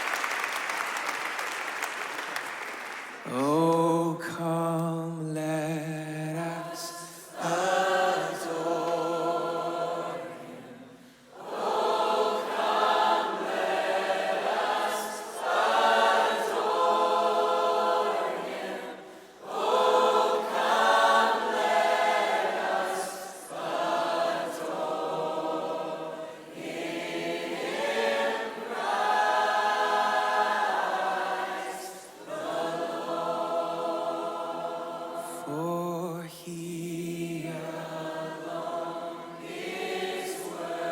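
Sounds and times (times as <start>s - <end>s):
choir singing: 5.7s - 40.9s.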